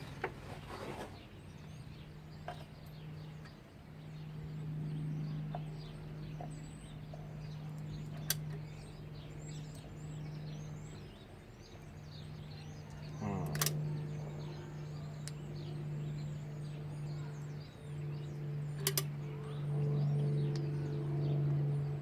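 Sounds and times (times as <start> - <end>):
small birds chirping: 0.0 - 22.0
steady low hum: 0.0 - 22.0
sharp click: 18.8 - 19.1.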